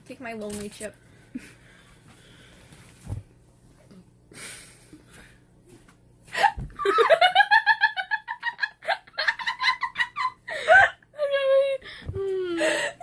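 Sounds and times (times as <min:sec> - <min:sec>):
girl laughing: 0:06.4 - 0:13.0.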